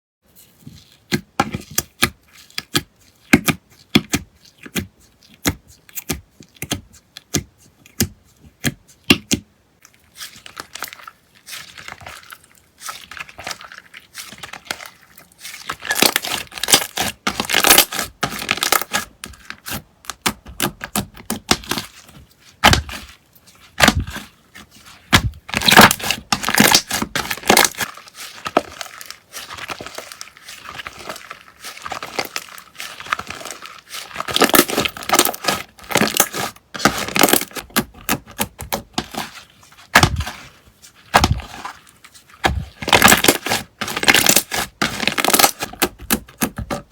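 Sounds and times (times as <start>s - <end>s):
slime popping and squishing: 10.3s - 40.4s, 42.4s - 46.8s.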